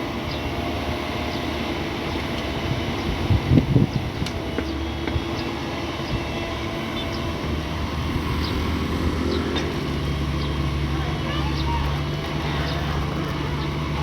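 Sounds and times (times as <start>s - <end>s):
excavator diesel engine running: 0.0s - 14.0s.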